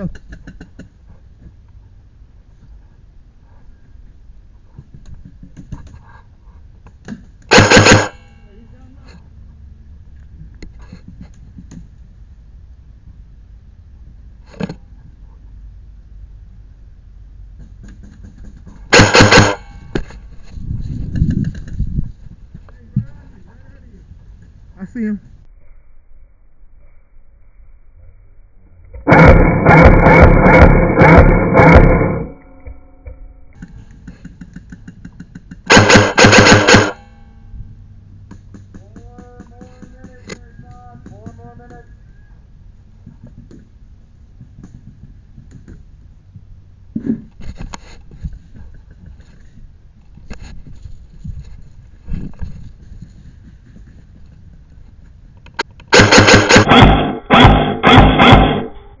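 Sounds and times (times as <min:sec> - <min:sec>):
airsoft gun firing bursts: 0:07.5 - 0:08.2, 0:18.9 - 0:19.7, 0:35.7 - 0:37.1, 0:55.9 - 0:58.7
music with heavy bass hits: 0:07.5 - 0:08.3, 0:18.9 - 0:19.8, 0:29.1 - 0:32.4, 0:35.7 - 0:37.1, 0:55.9 - 0:59.0.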